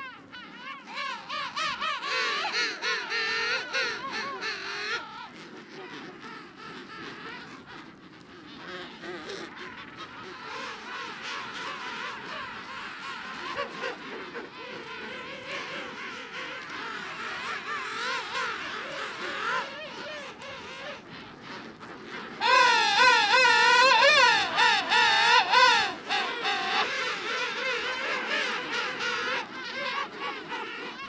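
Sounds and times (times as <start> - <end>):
penguin colony calling: 0.2 - 31.0
penguin wavering call: 22.4 - 26.9.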